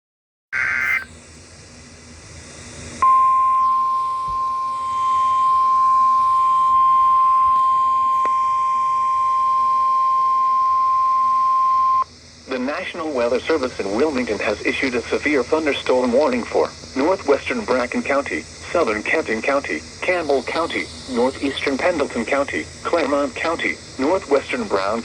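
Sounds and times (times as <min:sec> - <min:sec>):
steady single-pitch alert tone: 0:00.6 - 0:01.1
faint radio hiss: 0:00.6 - 0:25.0.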